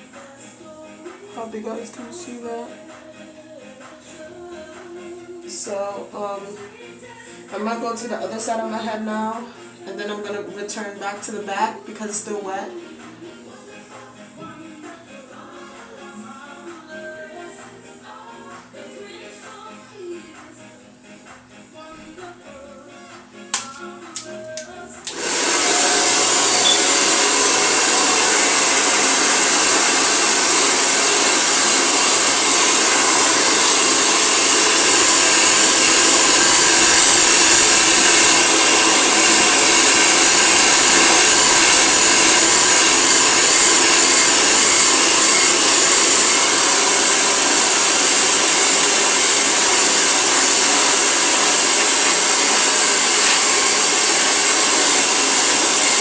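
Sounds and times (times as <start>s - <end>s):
hair dryer blowing: 0.0s - 15.9s, 23.5s - 56.0s.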